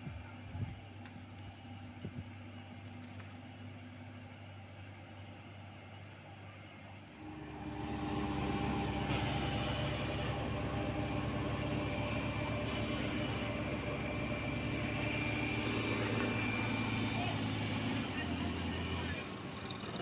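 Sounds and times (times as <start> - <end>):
diesel engine running: 0.0 - 20.0
hiss: 9.0 - 10.4, 12.6 - 13.6.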